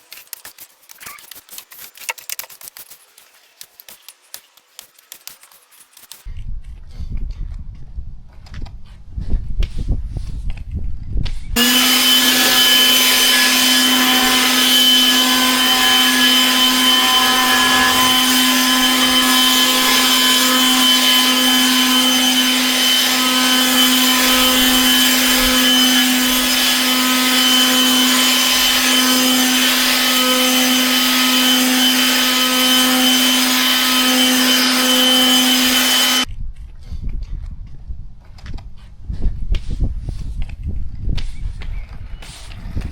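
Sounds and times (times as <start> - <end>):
motorised machine humming: 11.6 - 36.3.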